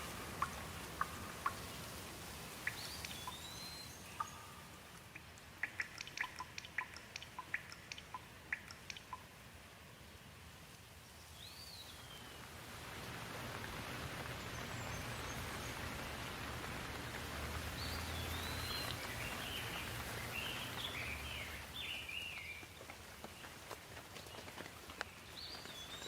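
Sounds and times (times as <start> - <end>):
rain falling: 0.0 - 26.0
bird chirping: 2.6 - 9.3, 17.8 - 23.5.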